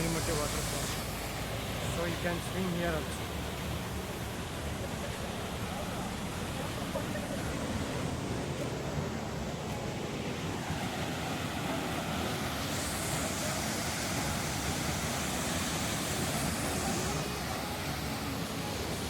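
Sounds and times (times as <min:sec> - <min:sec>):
waterfall roaring: 0:00.0 - 0:19.0.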